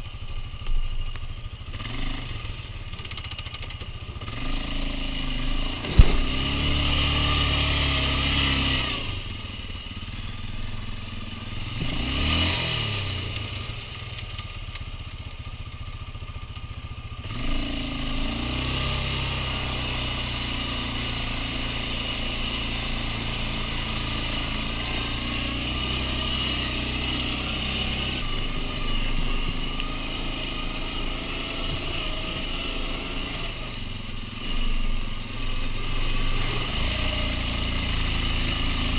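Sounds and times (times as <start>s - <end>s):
quad bike engine revving: 1.6s - 38.9s
sharp knock: 5.8s - 6.7s.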